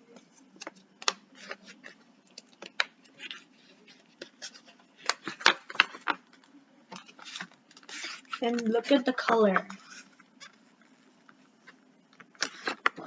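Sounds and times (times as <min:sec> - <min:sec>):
paper and cardboard rustling: 0:06.9 - 0:11.0.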